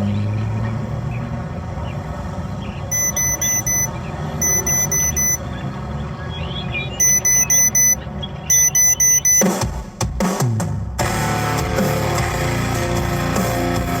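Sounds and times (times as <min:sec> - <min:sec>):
electronic beeping: 0:02.9 - 0:05.4, 0:06.8 - 0:09.5.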